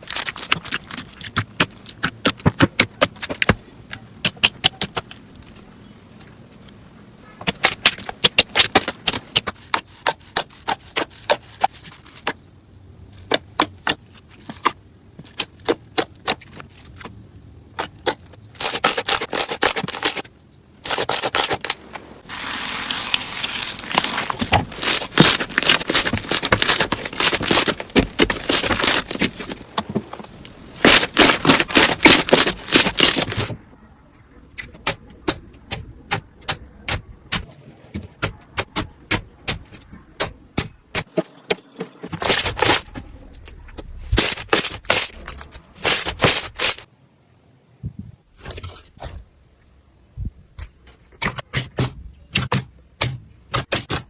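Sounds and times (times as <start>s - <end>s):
slime squeezed crackling: 20.9s - 29.6s, 30.7s - 33.4s.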